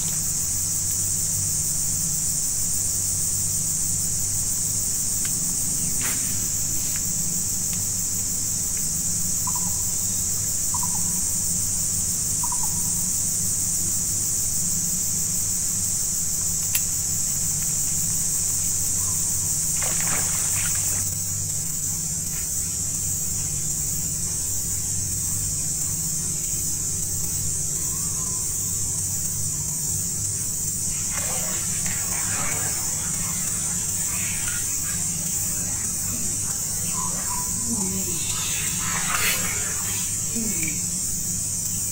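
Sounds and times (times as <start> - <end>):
insect chorus drone: 0.0 - 41.9
water splashing: 19.7 - 21.1, 30.9 - 40.2.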